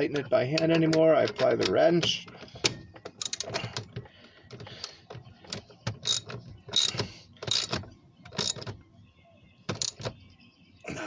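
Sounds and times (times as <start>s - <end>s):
socket ratchet clicking: 3.2s - 3.6s, 5.5s - 8.6s, 9.7s - 10.1s.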